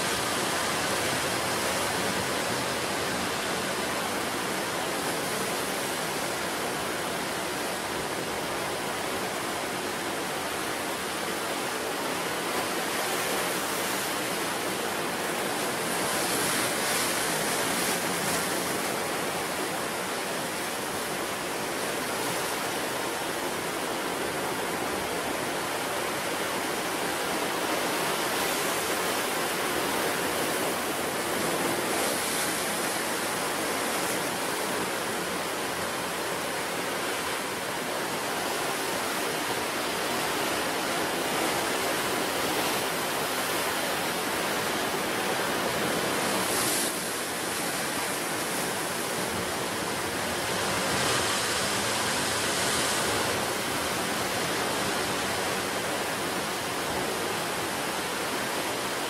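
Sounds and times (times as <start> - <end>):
waves breaking on shore: 0.0 - 59.0.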